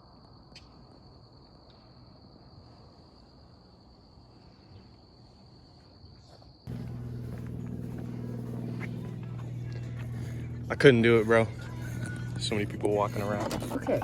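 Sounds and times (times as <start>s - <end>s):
loud low hum: 6.7s - 14.0s.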